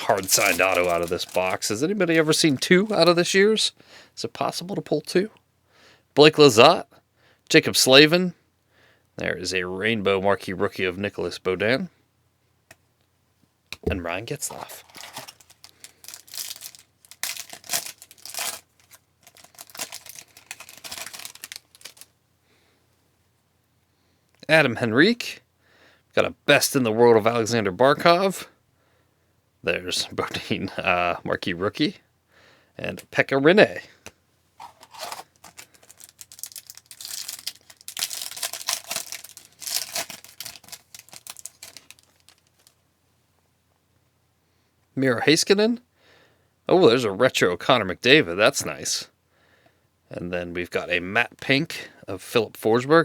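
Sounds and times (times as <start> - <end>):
cards rustling and clicking: 0.0 - 3.4, 13.8 - 22.1, 34.6 - 42.8
wrapper crinkling and tearing: 0.0 - 3.4, 14.5 - 22.1, 34.6 - 42.8.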